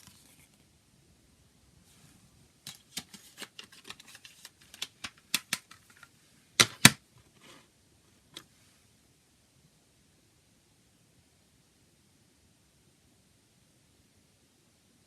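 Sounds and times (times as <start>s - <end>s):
plastic cd case clicks and taps: 2.7s - 7.0s
plastic case loud snaps: 4.7s - 5.8s, 6.6s - 7.0s.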